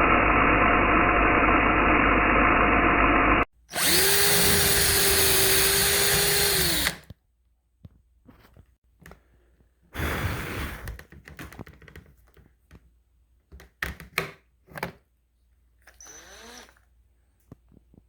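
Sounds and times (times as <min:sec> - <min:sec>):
small motor whining: 0:03.7 - 0:07.0.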